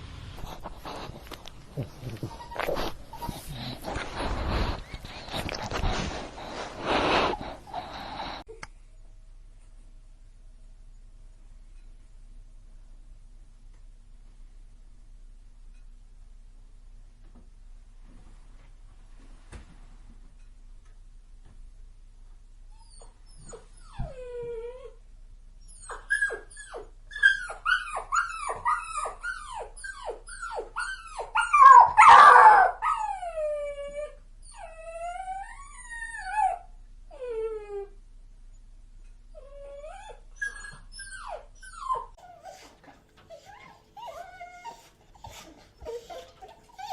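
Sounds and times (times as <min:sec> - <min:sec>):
puppy whimpering and howling: 0:01.8 - 0:03.9, 0:22.8 - 0:25.0, 0:25.7 - 0:38.0, 0:39.4 - 0:42.7, 0:43.3 - 0:46.9.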